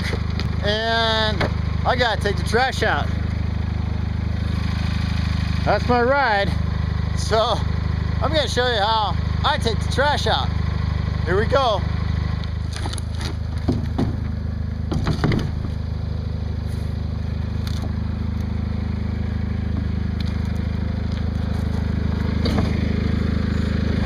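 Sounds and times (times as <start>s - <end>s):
tractor engine idling: 0.0s - 24.0s
knocks and rattles: 12.7s - 15.8s.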